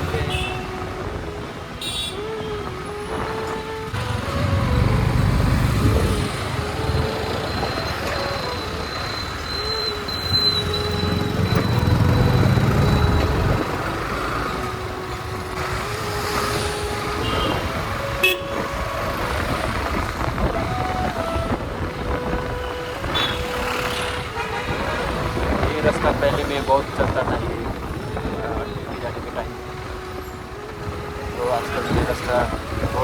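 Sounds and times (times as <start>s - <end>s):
road traffic engines: 0.0s - 33.0s
vehicle horn toots: 0.1s - 0.8s, 1.8s - 2.3s, 17.2s - 18.6s, 23.1s - 24.9s.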